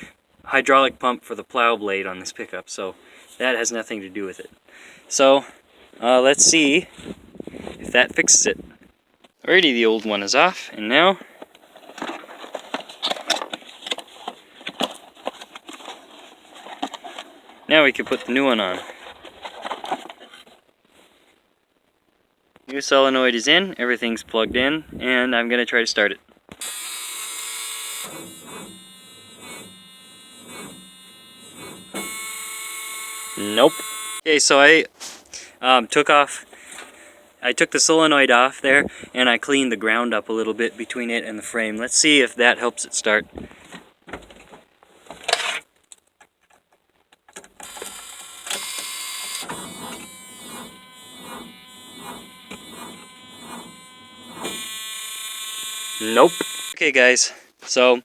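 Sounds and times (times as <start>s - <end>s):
starter solenoid buzzing: 26.6s - 34.3s, 47.6s - 56.8s.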